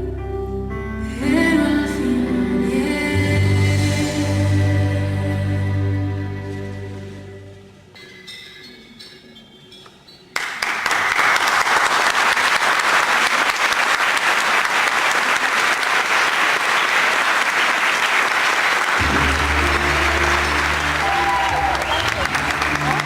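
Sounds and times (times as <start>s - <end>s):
soft music notes: 0.0s - 9.6s, 19.0s - 23.0s
audience applause: 10.4s - 23.0s.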